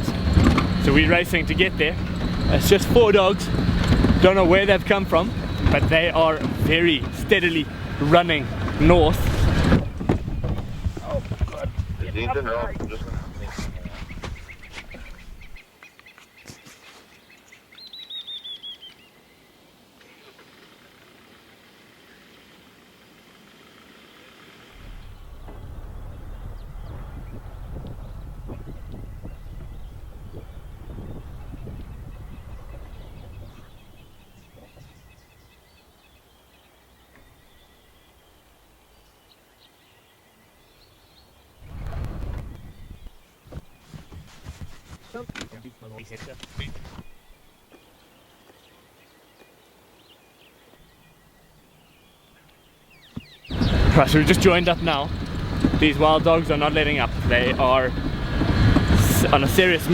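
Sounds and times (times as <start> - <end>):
low vehicle rumble: 0.0 - 15.6, 24.7 - 35.4, 41.6 - 43.8, 53.5 - 59.9.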